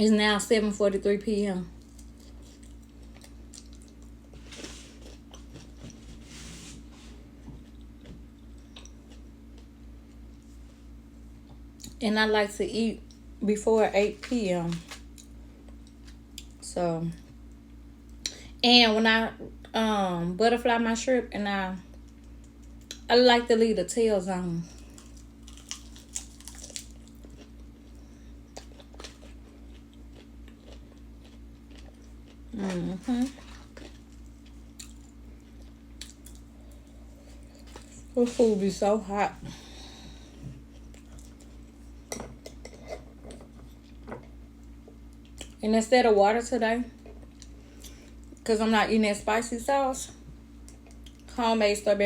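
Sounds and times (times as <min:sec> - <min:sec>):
chewing crisp fried food: 0:01.8 - 0:06.0, 0:24.8 - 0:38.2
small crunches: 0:24.8 - 0:38.6.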